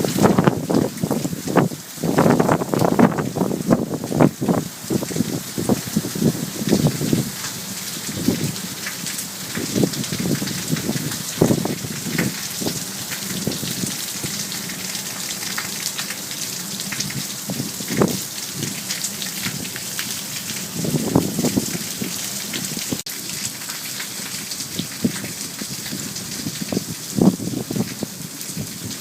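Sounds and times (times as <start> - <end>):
wind buffeting microphone: 0.0 - 7.4, 8.0 - 8.6, 9.5 - 14.4, 16.9 - 18.8, 20.6 - 23.0, 24.8 - 29.0.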